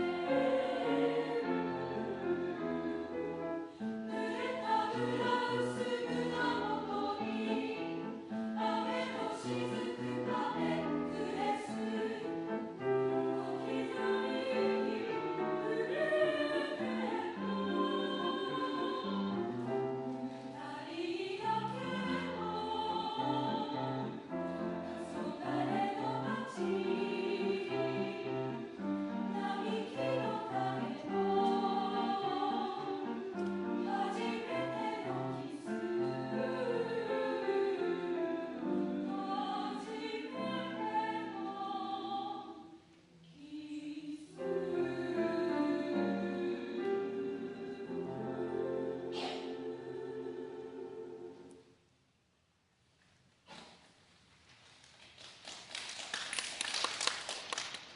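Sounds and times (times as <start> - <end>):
choir singing held chords: 0.0 - 51.8.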